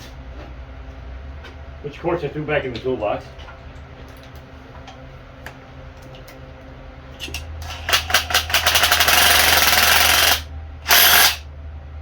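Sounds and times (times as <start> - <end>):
cordless power tool spinning: 7.6 - 11.4.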